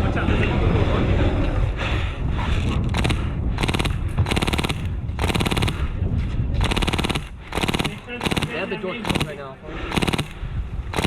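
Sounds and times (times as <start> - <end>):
airsoft guns firing bursts: 2.9 - 5.9, 6.6 - 11.0.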